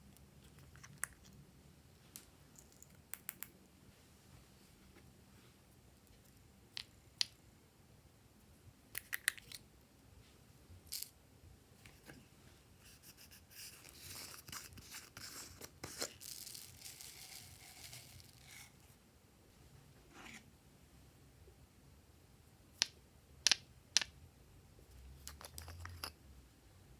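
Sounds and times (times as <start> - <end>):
crackly hissing of slime: 13.5 - 18.9.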